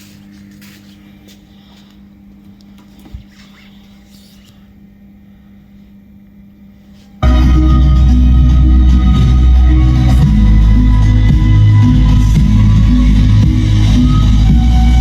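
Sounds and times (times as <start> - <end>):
low steady hum: 0.0 - 15.0
loud music with strong bass: 7.2 - 15.0.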